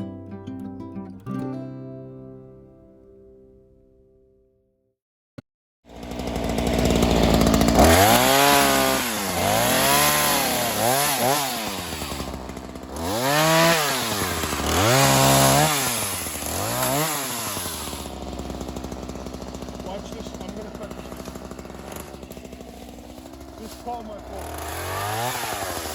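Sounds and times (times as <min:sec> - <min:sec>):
chainsaw engine revving: 0:05.9 - 0:25.9.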